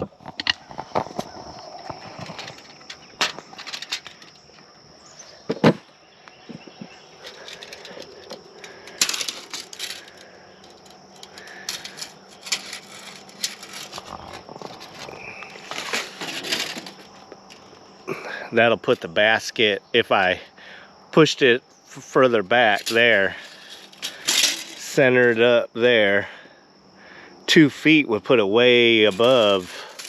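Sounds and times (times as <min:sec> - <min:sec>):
clicks rattles and knocks of parts: 0:00.2 - 0:04.7, 0:06.5 - 0:17.8, 0:22.7 - 0:25.0, 0:29.0 - 0:30.0
scraping bursts: 0:07.2 - 0:17.7, 0:22.7 - 0:25.0.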